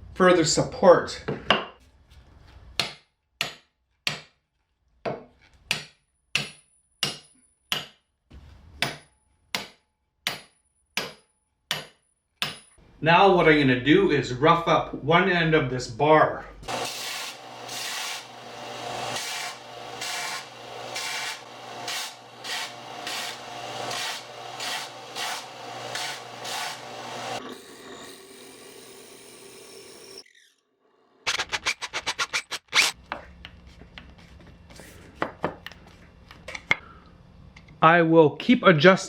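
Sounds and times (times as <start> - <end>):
file scraping steel bar: 16.7 - 30.2.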